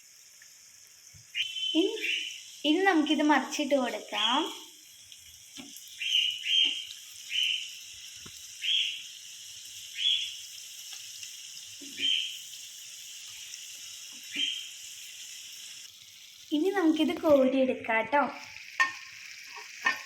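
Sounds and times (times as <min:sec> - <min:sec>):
food sizzling in hot oil: 0:00.0 - 0:20.0.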